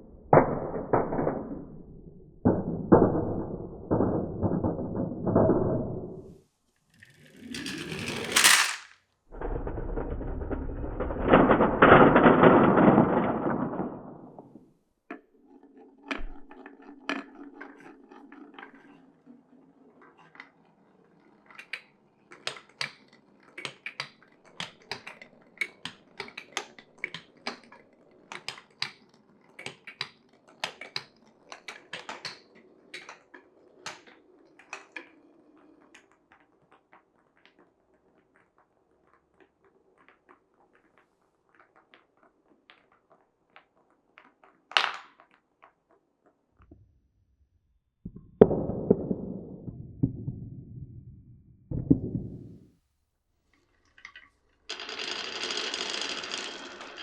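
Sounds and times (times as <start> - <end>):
marbles rolling on wooden run: 2.4 - 6.3, 7.0 - 14.6, 15.4 - 28.6, 31.5 - 45.8, 53.8 - 57.0
marbles clacking on wood: 7.0 - 14.6, 31.9 - 45.8, 53.8 - 57.0.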